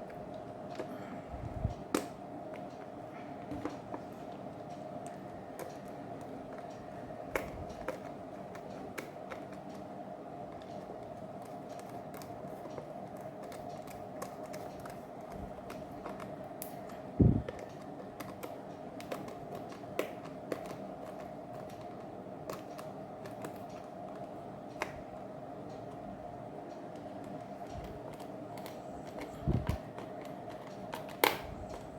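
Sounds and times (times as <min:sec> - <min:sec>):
faint steady hum: 0:00.0 - 0:31.9.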